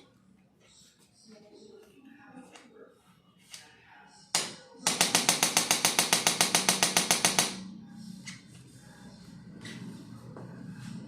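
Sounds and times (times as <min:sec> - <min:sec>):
rapid mechanical clicks: 0:04.9 - 0:07.7.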